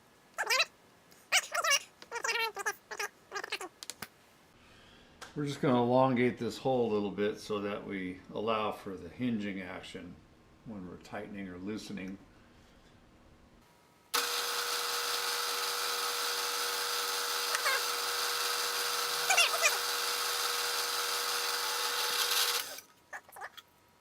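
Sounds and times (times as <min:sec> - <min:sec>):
power tool cutting metal: 0:14.2 - 0:22.9.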